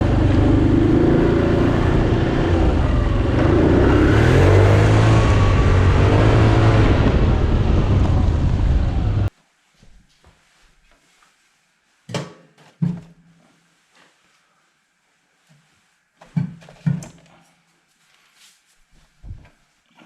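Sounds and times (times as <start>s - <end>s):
vehicle engine revving: 0.0s - 9.3s.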